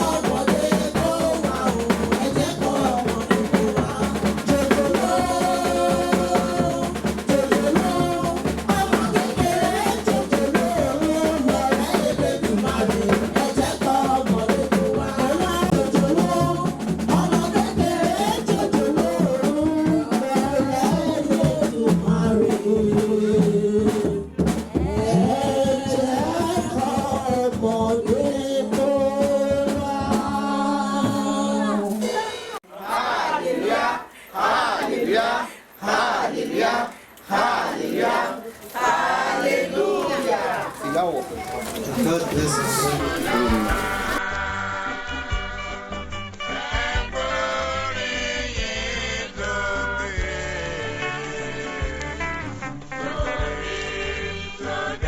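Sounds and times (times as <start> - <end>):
other instruments: 0.0 - 31.7, 41.0 - 55.0
drum kit: 0.0 - 32.2, 38.8 - 47.3
person singing: 0.0 - 32.6, 42.4 - 47.3.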